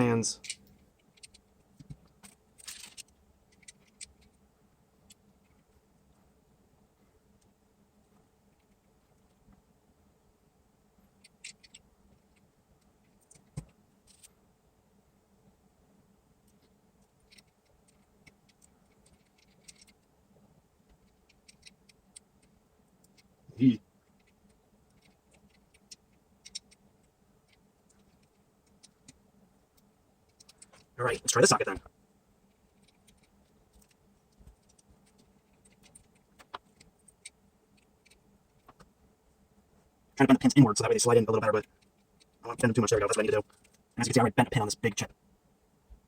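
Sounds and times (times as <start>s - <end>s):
small clicks of chips and circuit board: 11.2s - 14.3s, 16.5s - 20.1s, 24.1s - 26.8s.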